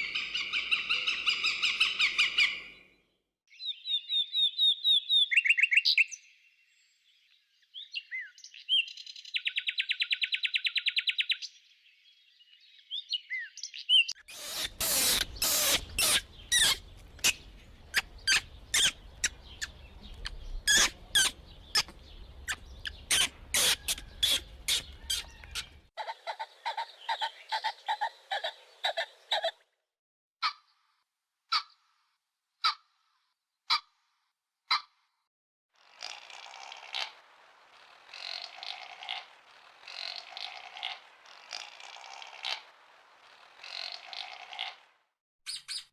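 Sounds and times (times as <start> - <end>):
birds chirping and calling: 0.0 - 2.9, 13.0 - 29.6.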